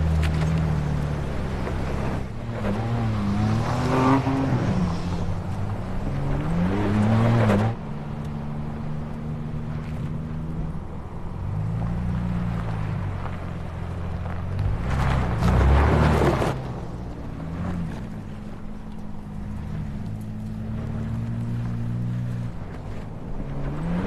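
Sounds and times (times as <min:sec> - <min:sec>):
engine revving: 0:00.0 - 0:07.9
road and tyre noise: 0:00.0 - 0:24.0.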